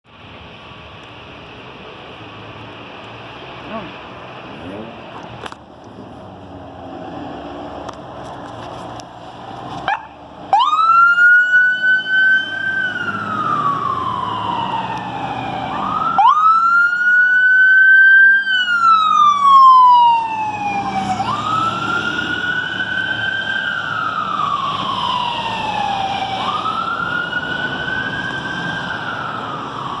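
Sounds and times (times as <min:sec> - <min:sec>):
truck engine rumble: 0:00.1 - 0:30.0
fire truck siren wailing: 0:09.6 - 0:30.0.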